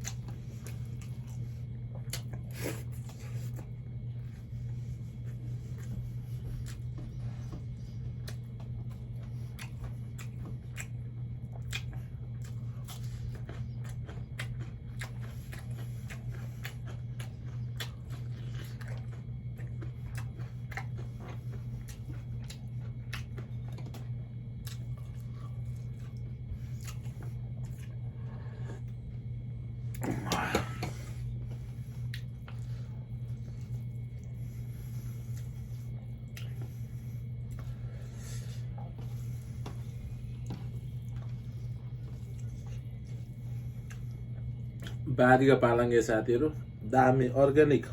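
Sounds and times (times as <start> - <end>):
steady low hum: 0.0 - 47.9
person chewing with wet mouth clicks: 8.2 - 28.0, 32.0 - 32.7, 35.4 - 36.7, 43.8 - 45.0.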